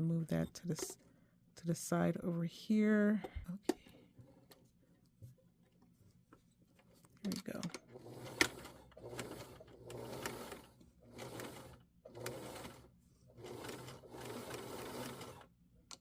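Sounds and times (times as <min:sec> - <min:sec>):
sewing machine stitching: 0:07.7 - 0:15.5.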